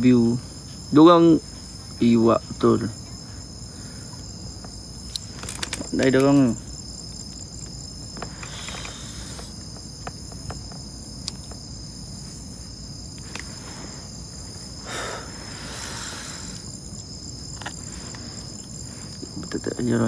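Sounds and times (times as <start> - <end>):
night insects chirring: 0.0 - 20.0
rustling noise: 4.6 - 14.8, 16.6 - 20.0.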